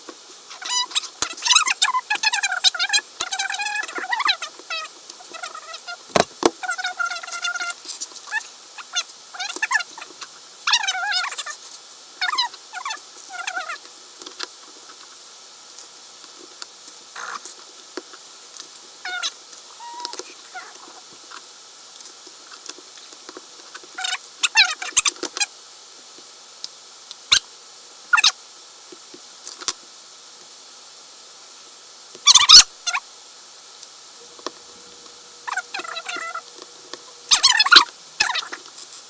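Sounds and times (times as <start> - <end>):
sped-up squeaky voice: 0.5 - 10.0, 10.7 - 11.6, 12.2 - 13.8, 19.0 - 20.9, 35.5 - 36.5, 37.3 - 38.6.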